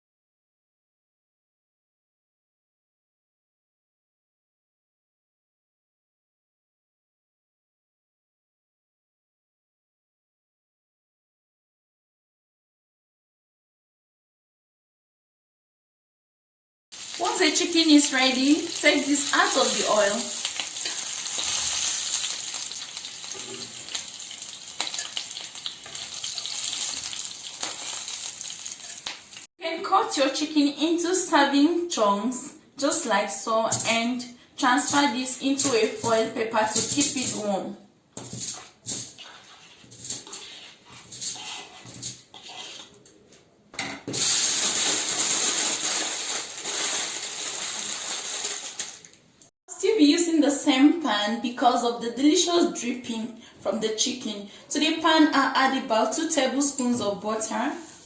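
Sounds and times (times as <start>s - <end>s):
meat sizzling in a skillet: 16.9s - 29.5s, 36.7s - 37.4s, 44.1s - 49.0s.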